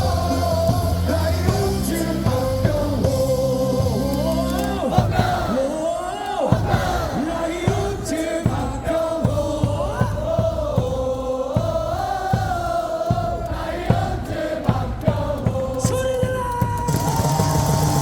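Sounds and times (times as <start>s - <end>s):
stadium crowd singing in unison: 0.0s - 18.0s
steady drum beat: 0.0s - 18.0s.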